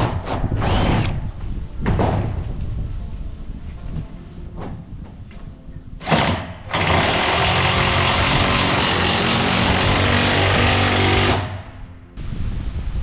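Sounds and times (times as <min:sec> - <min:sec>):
power tool running: 0:06.0 - 0:11.8.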